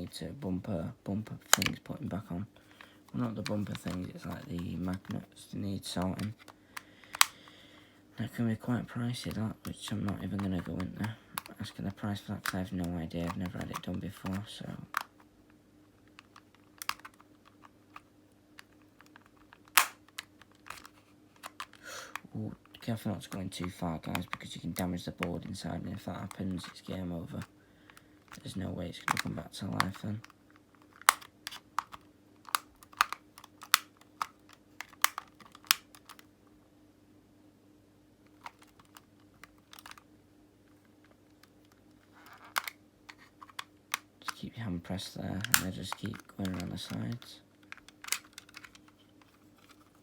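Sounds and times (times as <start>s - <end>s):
plastic clicks and snaps: 1.4s - 1.9s, 2.8s - 5.2s, 6.0s - 7.6s, 9.3s - 11.6s, 12.4s - 15.2s, 16.1s - 24.4s, 29.1s - 36.3s, 38.4s - 40.0s, 41.0s - 44.4s, 45.4s - 49.9s.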